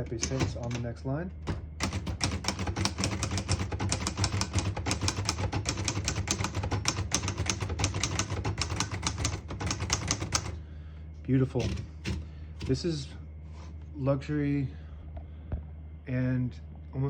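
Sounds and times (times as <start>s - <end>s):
manual typewriter typing: 0.0s - 10.6s, 11.5s - 12.9s.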